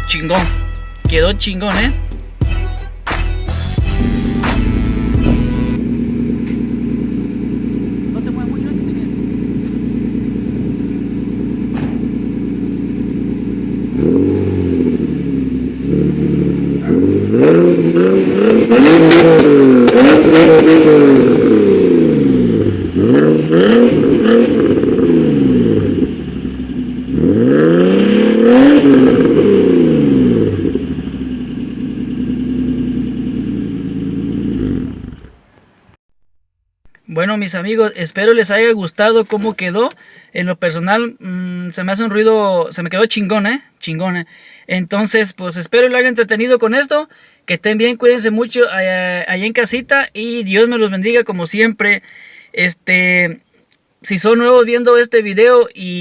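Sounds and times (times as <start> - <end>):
car engine idling and revving: 3.4 - 36.0.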